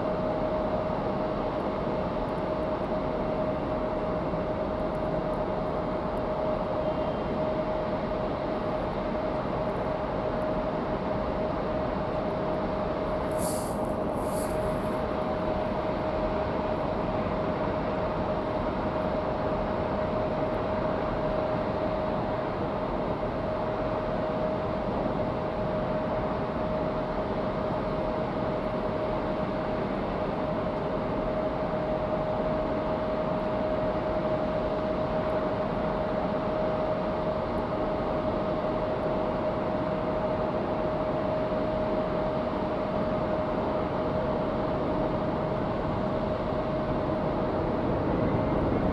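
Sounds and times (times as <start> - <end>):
aircraft engine drone: 46.3 - 48.9.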